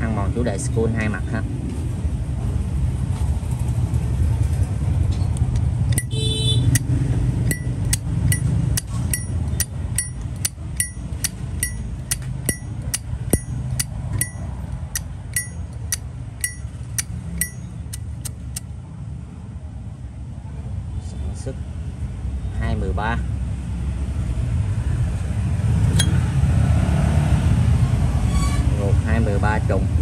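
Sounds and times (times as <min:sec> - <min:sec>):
traffic rumble: 0:00.0 - 0:30.0
sharp high ticks: 0:05.9 - 0:18.6.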